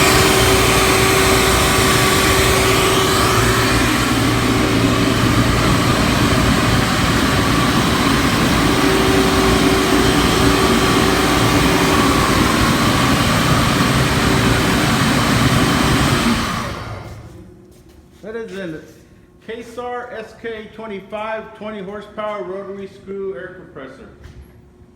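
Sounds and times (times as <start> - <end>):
air compressor running: 0.0 - 17.9.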